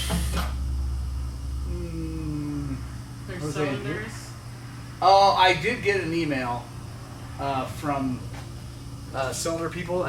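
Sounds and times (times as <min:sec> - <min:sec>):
low background hum: 0:00.0 - 0:10.0
man humming: 0:01.6 - 0:03.0.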